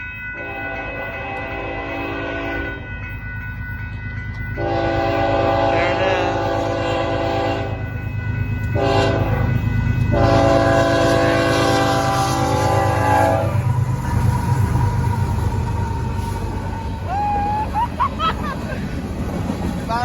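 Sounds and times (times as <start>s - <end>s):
locomotive air horn blasts: 0.4s - 2.8s, 4.6s - 7.8s, 8.8s - 9.5s, 10.1s - 13.8s.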